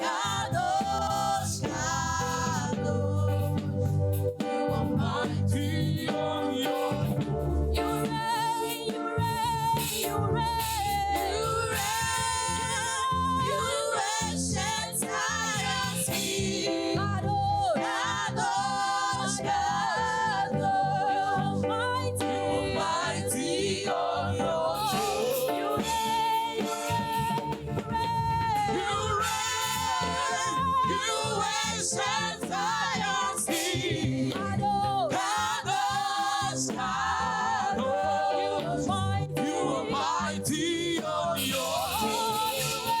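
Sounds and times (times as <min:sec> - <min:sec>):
church choir singing: 0:00.0 - 0:43.0
instrumental accompaniment: 0:15.0 - 0:43.0.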